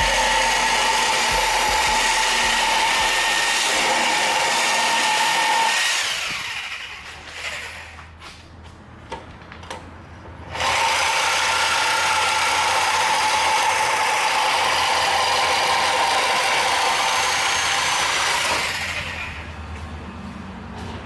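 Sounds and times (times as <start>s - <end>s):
power cutting tool whining: 0.0s - 8.0s, 10.6s - 19.4s.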